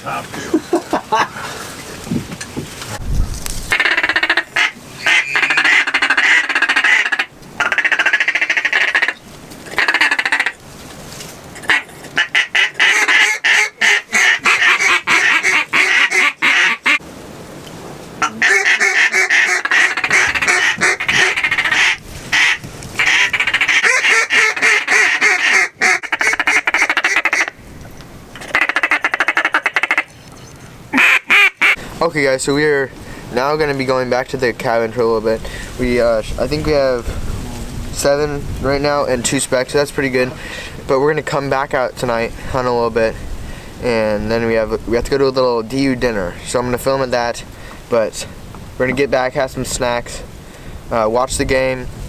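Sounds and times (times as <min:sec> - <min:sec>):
duck quacking: 0:03.7 - 0:10.6, 0:11.6 - 0:17.0, 0:18.2 - 0:27.6, 0:28.4 - 0:30.1, 0:30.9 - 0:31.8.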